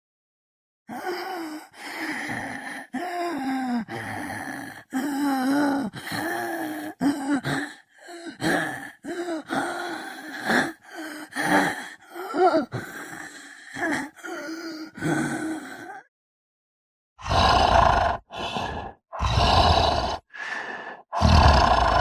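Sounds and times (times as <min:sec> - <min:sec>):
voice moaning and groaning: 0:00.9 - 0:16.1, 0:17.2 - 0:22.0
rough growl: 0:17.2 - 0:20.3, 0:21.2 - 0:22.0.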